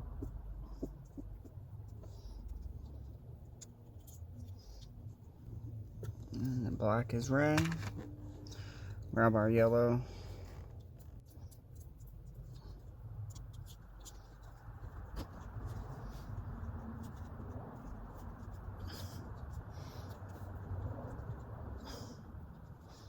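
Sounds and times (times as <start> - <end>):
steady low rumble: 0.0 - 23.0
wires clicking and rustling: 0.2 - 23.0.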